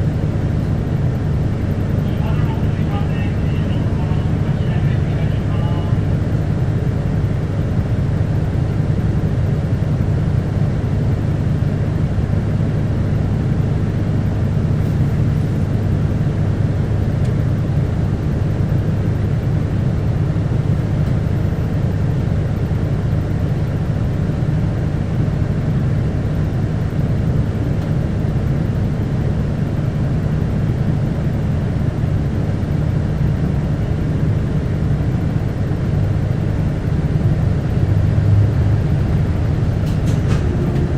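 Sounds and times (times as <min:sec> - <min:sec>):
bus engine hum: 0:00.0 - 0:40.9.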